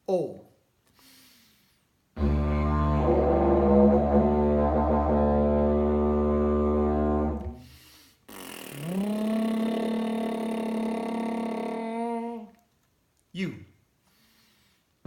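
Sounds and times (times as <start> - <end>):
breath: 0.9 - 1.9, 7.6 - 8.8, 14.0 - 15.0
didgeridoo drone: 2.2 - 7.6
person toning a vowel: 8.3 - 12.6.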